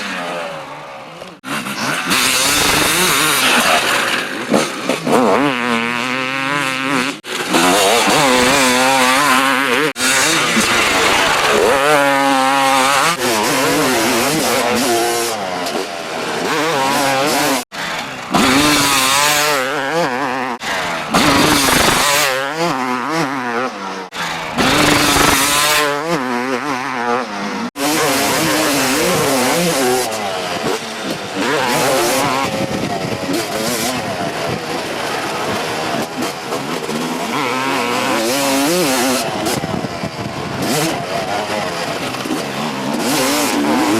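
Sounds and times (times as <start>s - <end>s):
motocross engine revving: 0.0s - 43.9s.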